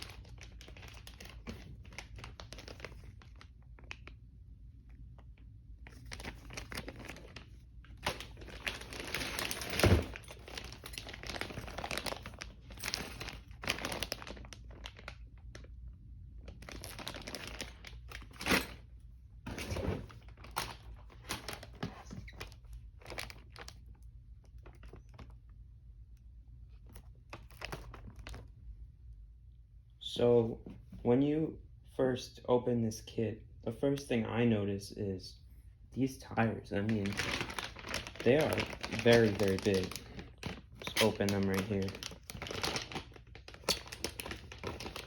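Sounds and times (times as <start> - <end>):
packaging crinkling and rustling: 0.0 - 15.8, 16.4 - 25.6, 26.7 - 28.6, 36.7 - 45.0.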